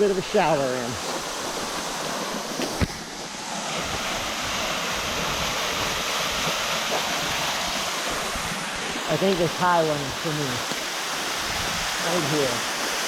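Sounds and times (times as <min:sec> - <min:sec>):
small waterfall splashing: 0:00.0 - 0:13.0.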